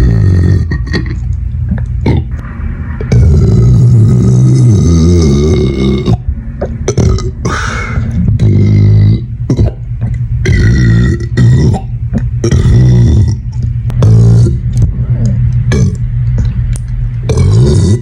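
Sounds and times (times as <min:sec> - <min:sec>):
man belching: 0:00.0 - 0:02.4, 0:03.0 - 0:14.7, 0:15.7 - 0:16.0, 0:17.3 - 0:18.0.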